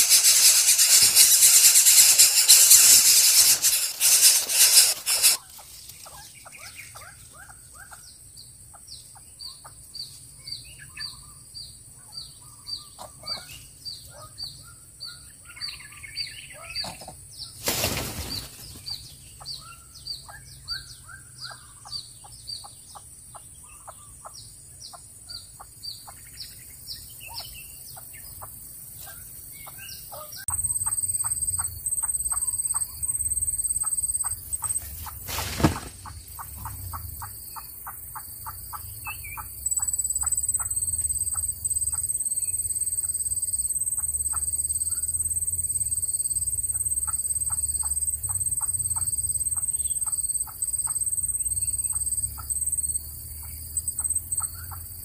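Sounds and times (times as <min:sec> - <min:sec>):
pulsed high-pitched buzz: 0:00.0 - 0:05.4, 0:30.5 - 0:55.0
loud rustle: 0:00.0 - 0:06.2, 0:17.6 - 0:18.8, 0:34.5 - 0:36.7
birds chirping: 0:00.0 - 0:07.4, 0:25.9 - 0:55.0.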